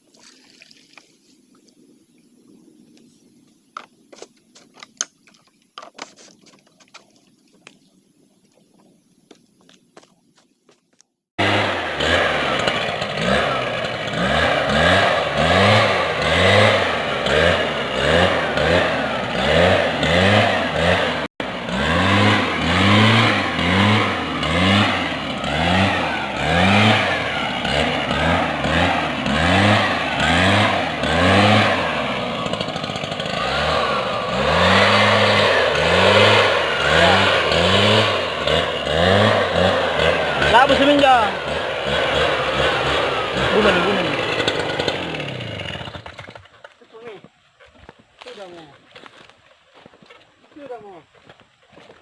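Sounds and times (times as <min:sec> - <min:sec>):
small petrol engine surging: 0:11.4 - 0:47.2.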